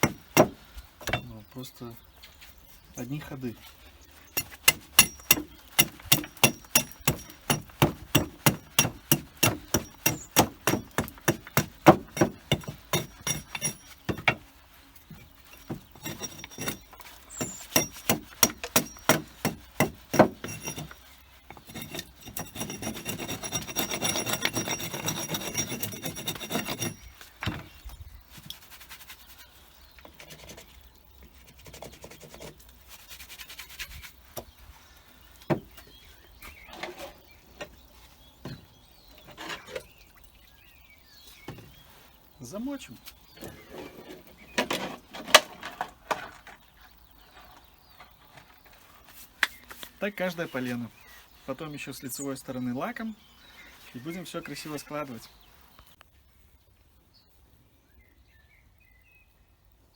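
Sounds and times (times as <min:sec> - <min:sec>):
steady scraping: 0:02.4 - 0:27.8
hand tool strokes on a log: 0:03.6 - 0:27.6, 0:28.3 - 0:37.2.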